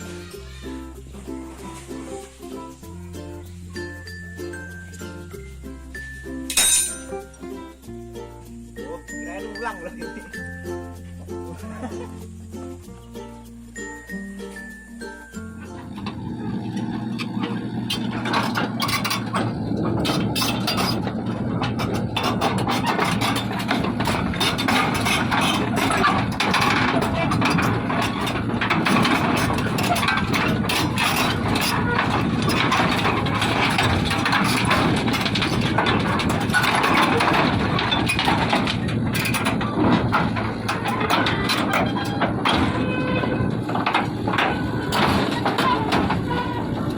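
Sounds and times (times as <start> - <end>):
diesel engine drone: 15.3 - 46.9
hydraulic breaker hammering: 15.8 - 46.9.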